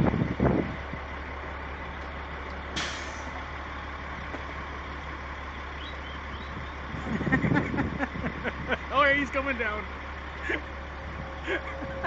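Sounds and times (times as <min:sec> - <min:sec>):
heavy truck idling: 0:00.0 - 0:12.0
air brake hiss: 0:02.8 - 0:03.3.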